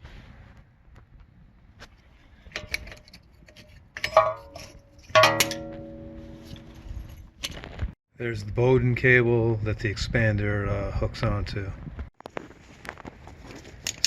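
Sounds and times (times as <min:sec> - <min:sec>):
metal brake parts clinking: 0:02.5 - 0:07.6
sharp metallic strikes ringing: 0:05.2 - 0:07.1.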